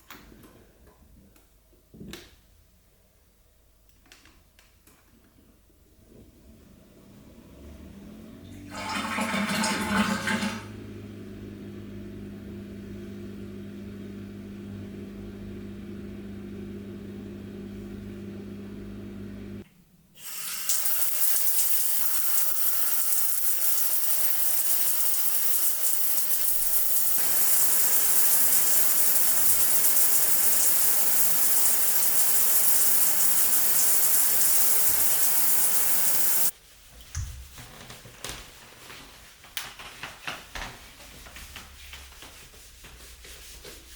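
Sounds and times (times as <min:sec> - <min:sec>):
electrical hum: 0:06.0 - 0:19.6
running water rushing: 0:25.0 - 0:36.5.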